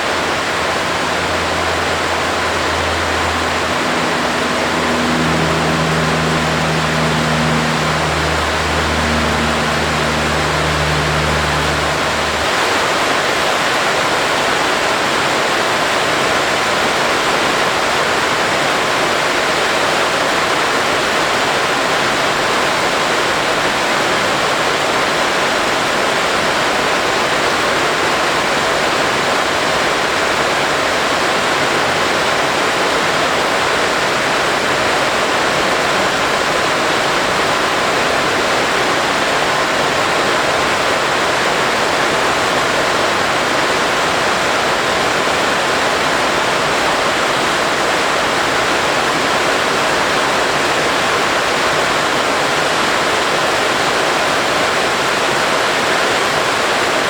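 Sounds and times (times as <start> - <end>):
water spraying: 0.0 - 13.3.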